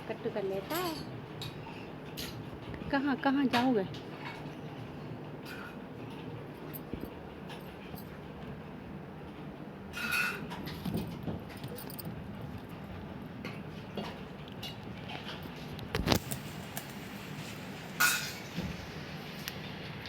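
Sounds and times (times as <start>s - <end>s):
light metallic clinks and knocks: 10.0s - 12.8s.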